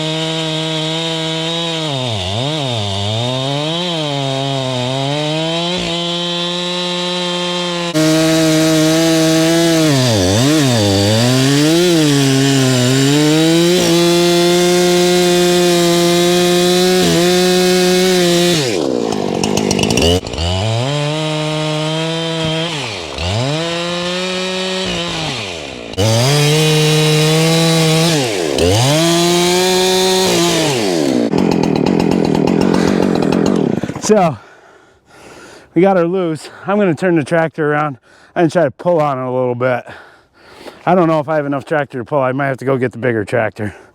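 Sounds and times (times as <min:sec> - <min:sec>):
chainsaw cutting tree: 0:00.0 - 0:34.2.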